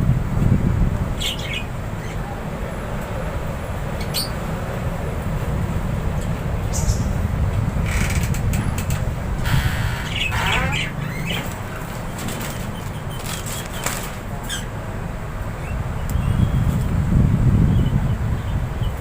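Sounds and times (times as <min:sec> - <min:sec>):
steady low rumble: 0:00.0 - 0:13.1, 0:14.3 - 0:19.0
parrots squawking and chirping: 0:09.4 - 0:11.8, 0:12.4 - 0:14.7
wings flapping: 0:11.2 - 0:14.3.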